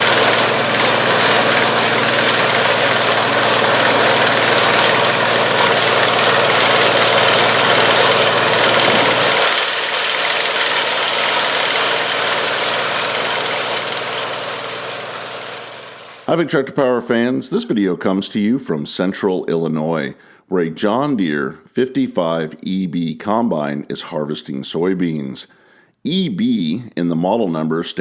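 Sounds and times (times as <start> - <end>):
combine harvester running: 0.0 - 16.3.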